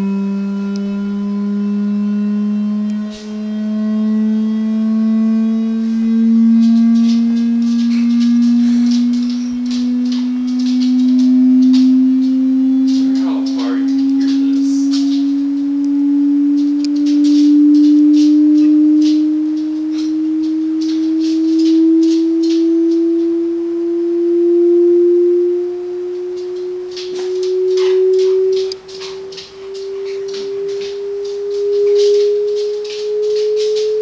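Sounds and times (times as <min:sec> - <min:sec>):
electronic tone rising in pitch: 0:00.0 - 0:34.0
short gliding whine: 0:00.0 - 0:34.0
light rattling and scratching: 0:05.2 - 0:23.4, 0:26.2 - 0:34.0.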